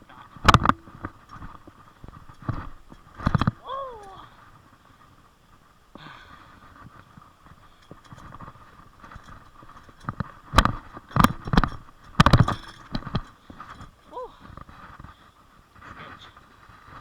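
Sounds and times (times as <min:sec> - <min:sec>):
bike knocks and rattles: 0:00.4 - 0:04.2, 0:07.5 - 0:14.0.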